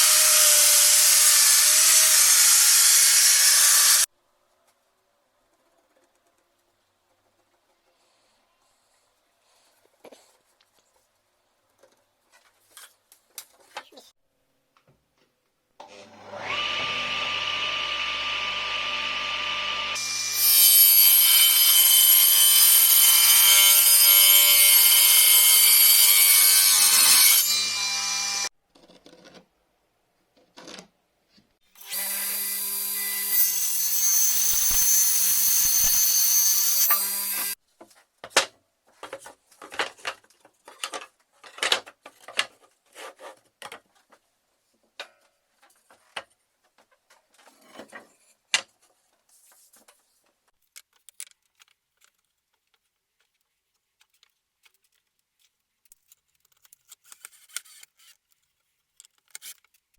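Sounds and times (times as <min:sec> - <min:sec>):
power saw cutting wood: 0:00.0 - 0:04.1, 0:15.8 - 0:28.5, 0:31.8 - 0:37.6.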